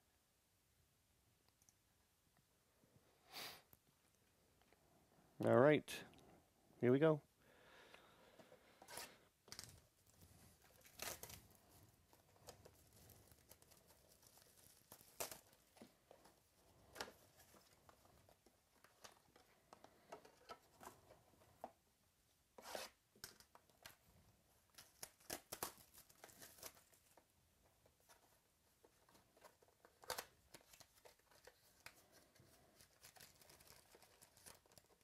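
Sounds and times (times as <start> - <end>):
foil wrappers tearing and crinkling: 10.6 - 11.8, 12.4 - 15.7, 24.8 - 27.2, 32.7 - 35.0.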